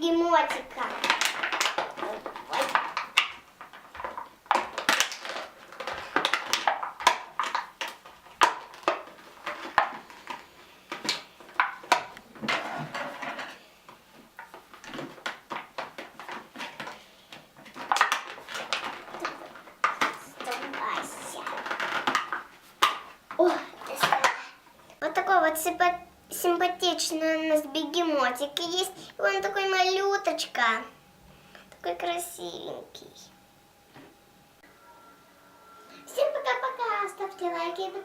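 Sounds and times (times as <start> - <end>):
packaging crinkling: 0.7 - 12.1, 14.3 - 23.1.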